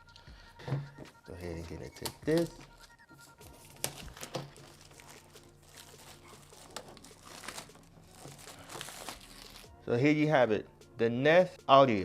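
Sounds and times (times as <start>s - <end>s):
packaging crinkling: 3.4s - 9.7s
packaging ripping: 3.6s - 9.7s.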